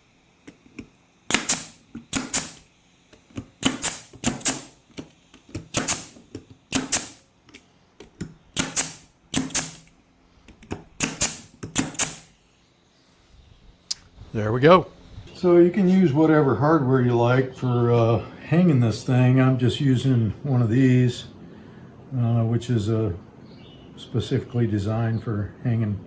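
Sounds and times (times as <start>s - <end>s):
brad nailer firing: 0.5s - 7.3s, 8.0s - 9.9s, 10.6s - 12.4s.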